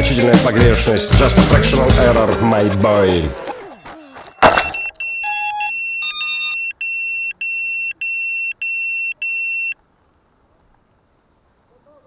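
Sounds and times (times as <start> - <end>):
multi-tone electronic chirps: 3.5 - 9.8
high-pitched electronic beeps: 4.3 - 9.8.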